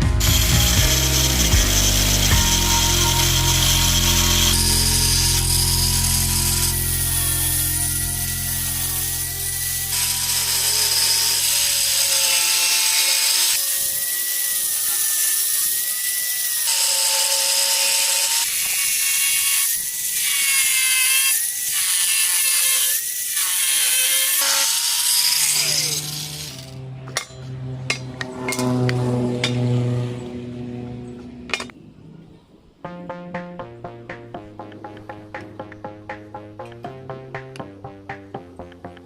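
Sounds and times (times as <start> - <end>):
power tool whining: 0.0 - 26.8.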